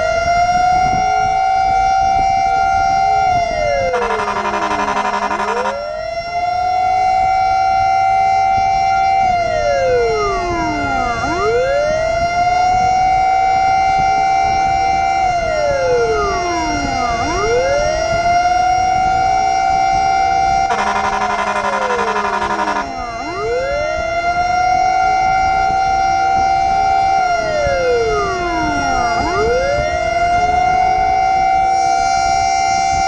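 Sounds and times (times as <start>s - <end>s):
fire truck siren wailing: 0.0s - 33.0s
steady tone: 2.5s - 6.0s, 20.4s - 23.6s
horn blast: 3.7s - 5.9s, 20.6s - 23.2s.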